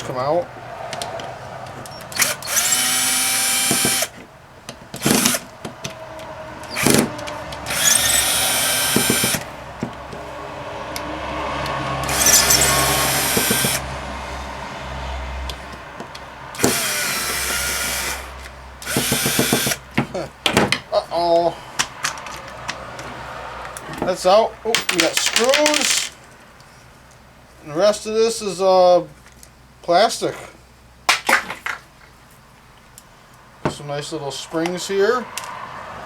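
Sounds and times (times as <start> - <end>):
power drill running: 2.2 - 4.2, 7.7 - 9.5, 12.0 - 13.8, 16.6 - 19.8
handling clicks and knocks: 19.9 - 26.2.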